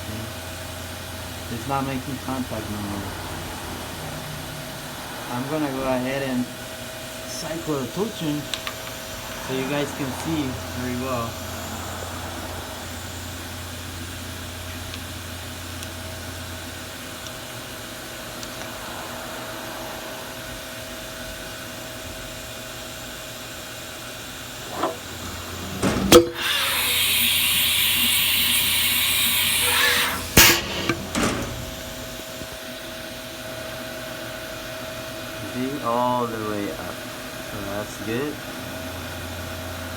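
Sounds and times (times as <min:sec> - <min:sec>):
air hissing: 0:00.0 - 0:32.5
steady machine hum: 0:00.0 - 0:39.9
sharp machine clunks: 0:24.7 - 0:32.2.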